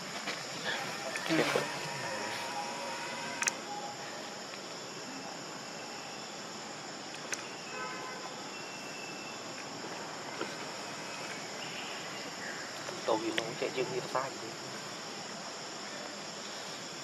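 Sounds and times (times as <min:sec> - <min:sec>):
high-pitched insect drone: 0:00.0 - 0:16.1
sharp clicks: 0:02.5 - 0:03.6.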